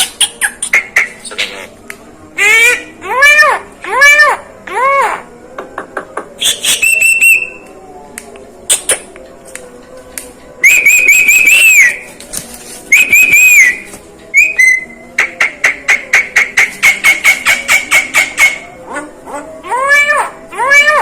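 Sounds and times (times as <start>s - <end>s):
bird whistling: 6.4s - 7.6s, 10.6s - 12.1s, 12.9s - 18.6s.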